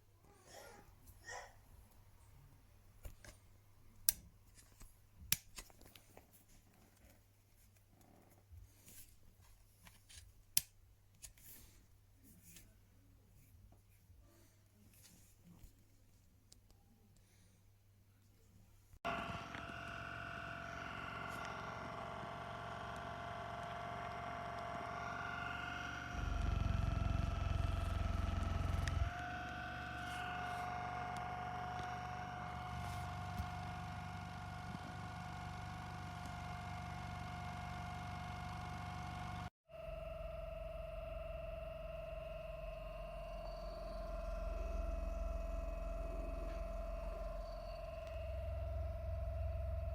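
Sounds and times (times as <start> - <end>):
low steady hum: 19.0 - 49.9
massage gun motor whine: 19.0 - 49.9.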